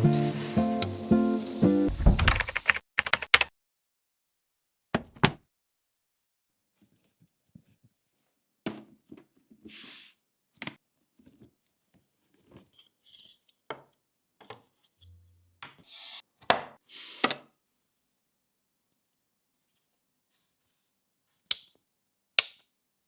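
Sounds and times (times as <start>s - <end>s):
packaging rustling: 1.9s - 2.8s
parts clicking and knocking: 1.9s - 3.5s.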